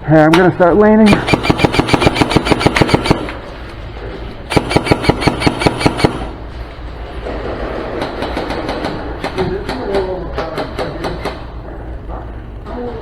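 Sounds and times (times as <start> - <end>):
airsoft rifle full-auto bursts: 1.1 - 3.4, 4.5 - 6.4.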